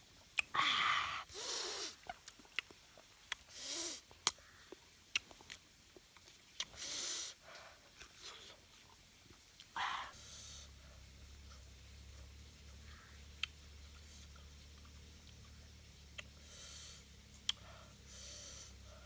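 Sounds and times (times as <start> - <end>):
mouth clicks and smacks: 0.2 - 0.6, 2.0 - 6.9, 17.4 - 17.7
breathy hisses through mouth: 0.5 - 2.0, 3.5 - 4.1, 6.7 - 8.6, 16.4 - 19.0.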